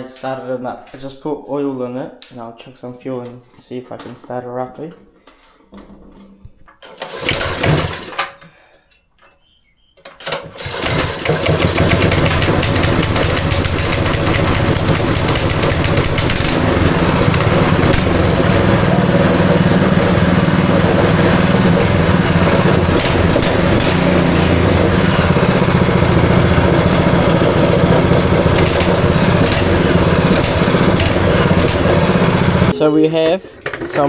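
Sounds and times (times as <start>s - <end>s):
small engine starting and running: 6.8s - 8.4s, 10.2s - 32.8s.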